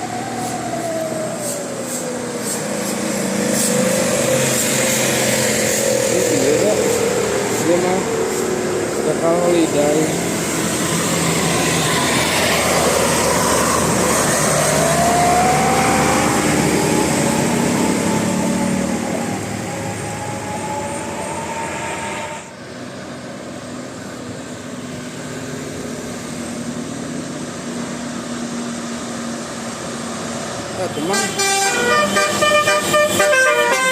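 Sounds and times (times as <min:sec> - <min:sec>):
bus driving past: 0:00.0 - 0:33.9
steady traffic noise: 0:00.0 - 0:33.9
whine rising in pitch: 0:11.0 - 0:22.6.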